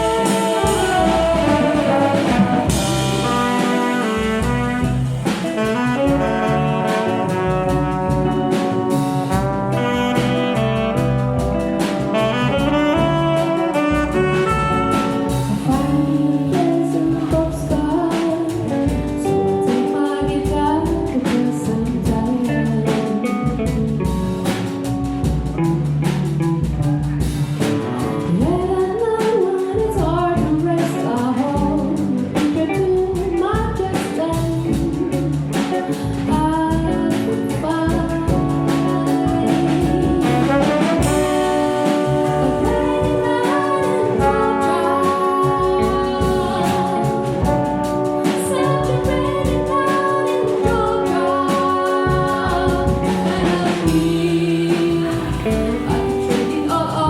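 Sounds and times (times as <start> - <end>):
big band jazz ballad: 0.0 - 57.0
person singing: 15.3 - 23.8, 28.3 - 57.0.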